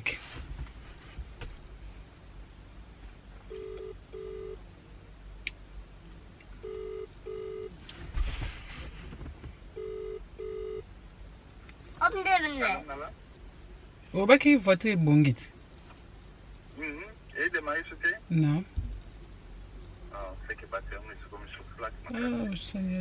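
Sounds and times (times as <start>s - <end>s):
telephone ringback tone: 3.5s - 4.6s, 6.6s - 7.7s, 9.8s - 10.8s
brief rustle: 7.8s - 9.6s.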